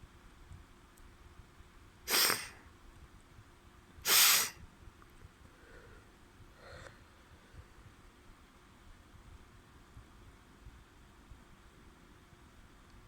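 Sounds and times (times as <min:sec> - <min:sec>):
nose blowing: 0:02.1 - 0:02.6, 0:04.1 - 0:04.6
faint breathing: 0:05.4 - 0:07.9.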